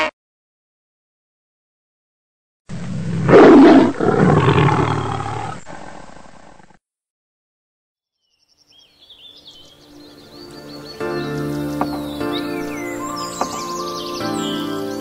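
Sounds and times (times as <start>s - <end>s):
large animal bellowing: 2.7s - 6.3s.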